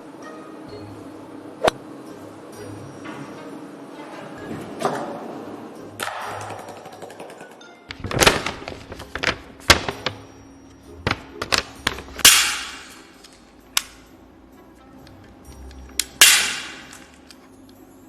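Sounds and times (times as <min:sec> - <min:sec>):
faint background music: 0:00.0 - 0:18.0.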